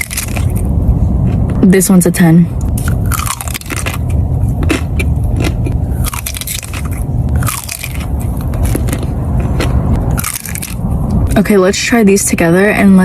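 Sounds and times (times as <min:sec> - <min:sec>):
crisp chewing crunches: 0:00.0 - 0:01.6, 0:02.6 - 0:10.9
steady low rumble: 0:00.0 - 0:13.0.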